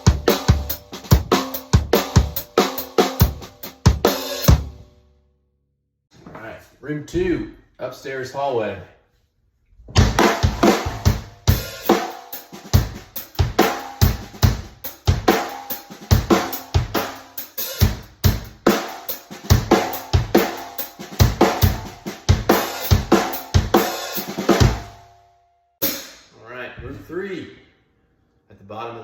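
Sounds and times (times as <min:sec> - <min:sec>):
drum kit playing a groove: 0:00.0 - 0:04.9, 0:10.0 - 0:25.0, 0:25.8 - 0:26.2.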